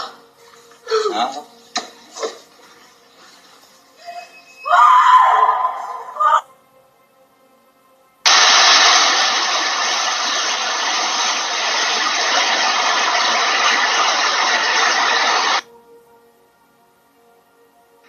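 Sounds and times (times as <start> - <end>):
loud steady rushing noise: 8.3 - 15.6.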